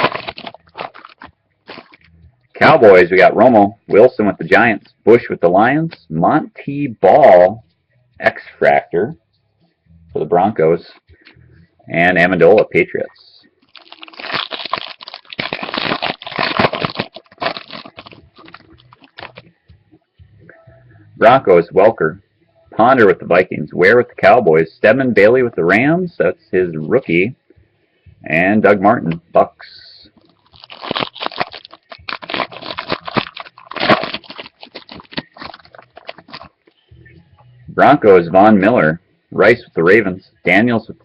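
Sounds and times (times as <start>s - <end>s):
wrapper tearing and crinkling: 0.0s - 2.1s, 13.7s - 19.4s, 30.4s - 36.6s.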